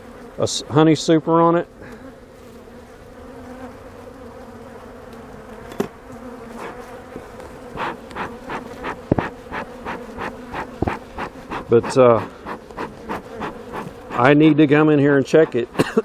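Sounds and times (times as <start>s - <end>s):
bees buzzing: 0.0s - 16.0s
rustling scraping strokes: 6.6s - 14.5s, 15.2s - 16.0s
sharp knocks: 7.8s - 14.2s.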